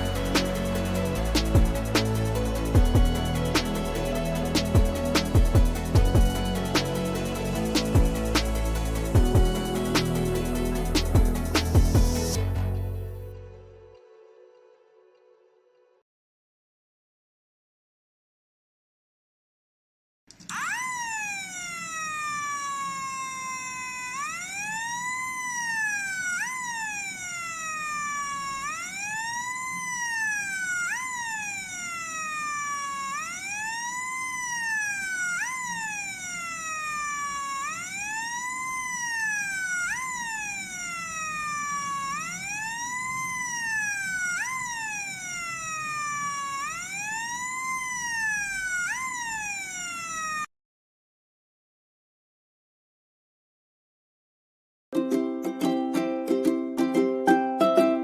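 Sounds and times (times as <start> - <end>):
electronic siren wailing: 0.0 - 12.7, 20.5 - 50.5.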